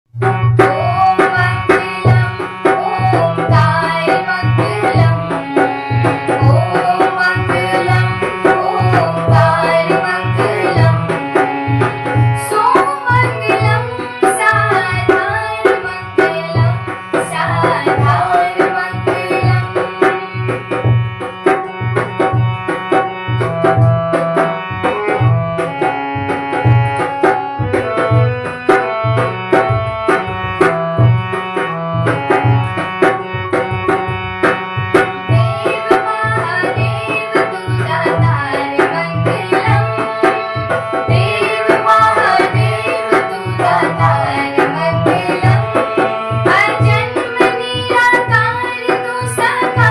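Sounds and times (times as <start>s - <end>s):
bending melody: 0.1s - 49.9s
hand drum rhythm: 0.1s - 49.9s
devotional instrumental music: 0.2s - 49.9s.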